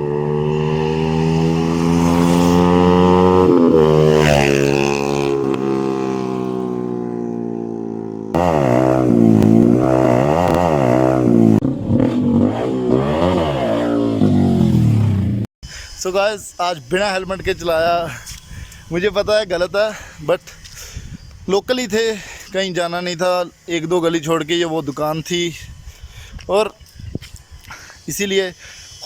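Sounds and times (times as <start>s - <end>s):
motorcycle engine revving: 0.0s - 15.5s.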